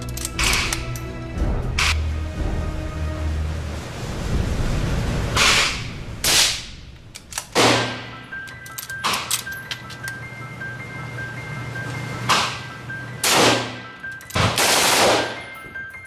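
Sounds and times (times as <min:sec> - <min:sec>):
gunshots with echo: 0:13.2 - 0:13.8, 0:14.4 - 0:15.4.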